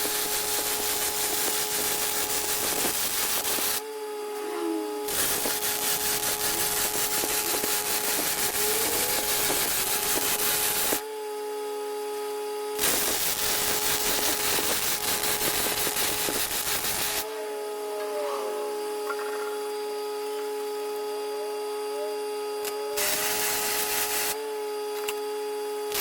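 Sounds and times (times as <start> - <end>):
welding crackling sizzle: 0.0 - 4.3, 5.0 - 11.1, 12.7 - 17.3, 22.5 - 26.0
steady hum: 0.0 - 26.0.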